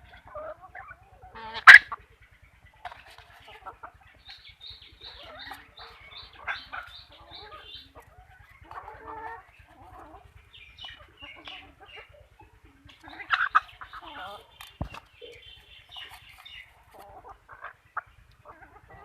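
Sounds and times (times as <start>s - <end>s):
chickens clucking: 0.0s - 19.0s
short high chicken calls: 0.7s - 2.0s.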